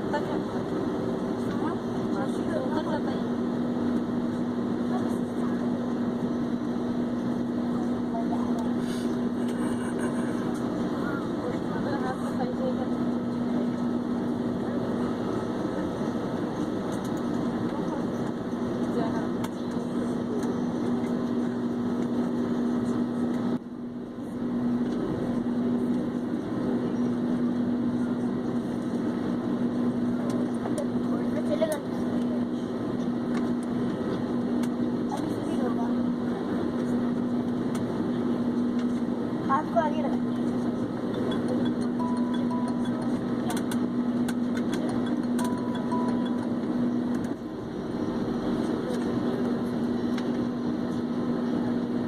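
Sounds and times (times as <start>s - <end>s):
jet engine cabin drone: 0.0s - 52.0s
faint high beeps: 41.4s - 43.2s, 45.3s - 46.6s.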